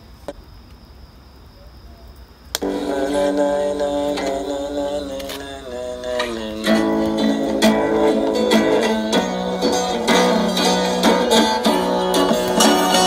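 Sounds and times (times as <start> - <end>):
saz and guitar music on small speaker: 2.6 - 13.0.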